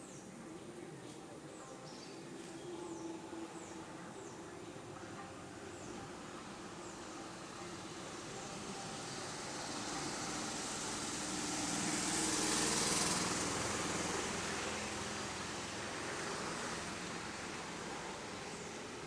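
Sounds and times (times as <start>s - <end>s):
passing vehicle rushing: 9.3s - 17.8s.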